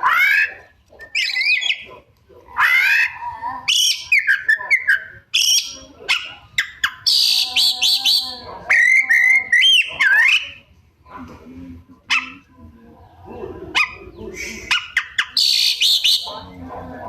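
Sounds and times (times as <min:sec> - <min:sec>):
bird singing whistles and chirps: 0:15.2 - 0:16.3.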